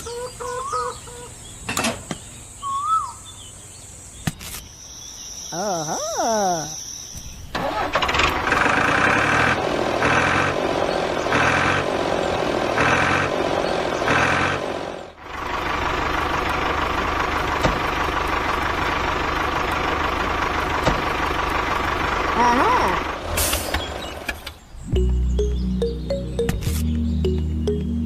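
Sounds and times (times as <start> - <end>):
vehicle engine running: 7.6 - 28.0.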